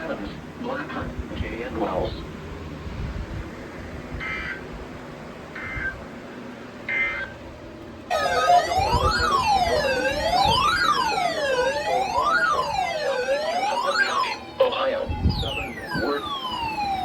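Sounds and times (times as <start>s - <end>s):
electronic siren wailing: 4.2s - 4.7s, 5.5s - 6.0s, 6.9s - 7.4s, 8.1s - 17.0s.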